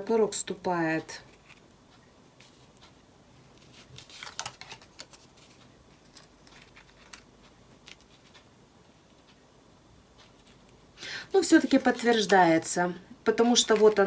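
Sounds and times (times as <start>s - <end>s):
cards clicking and rustling: 3.6s - 8.5s, 13.4s - 14.0s.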